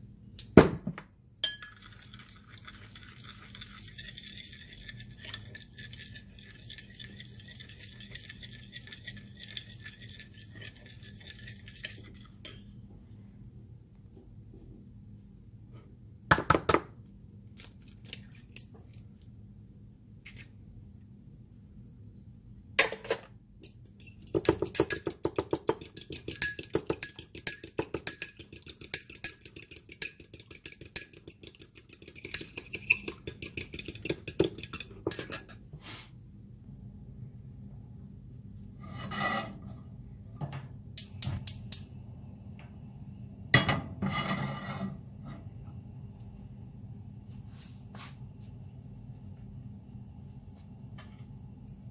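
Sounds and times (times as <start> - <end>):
metal utensils clinking on dishes: 32.1 - 35.6.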